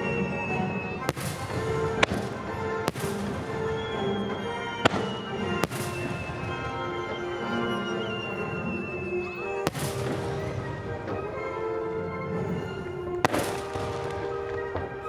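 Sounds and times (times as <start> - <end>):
fireworks bangs: 0.0 - 15.0
music: 0.0 - 15.0.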